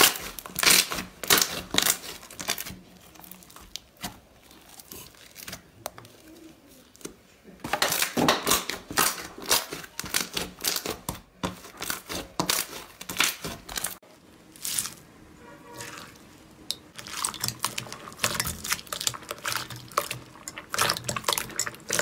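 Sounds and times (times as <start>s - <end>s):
crunchy slime crackling: 0.0s - 22.0s.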